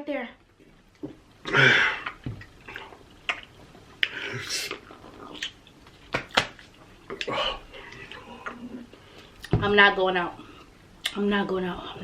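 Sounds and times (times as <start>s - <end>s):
people gulping and slurping: 1.0s - 5.7s.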